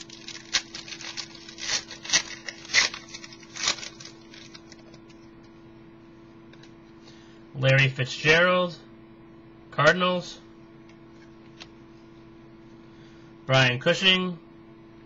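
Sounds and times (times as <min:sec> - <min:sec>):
cards and packaging crinkling: 0:00.0 - 0:05.2.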